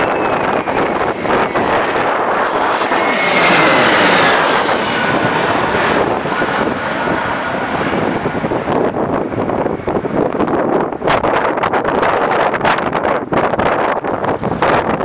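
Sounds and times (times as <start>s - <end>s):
airliner flying past: 0.0s - 10.6s
wind buffeting microphone: 0.0s - 15.0s.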